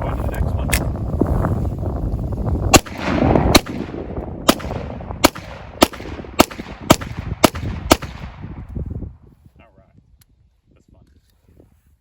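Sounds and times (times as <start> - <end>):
pistol shots: 2.7 - 8.4.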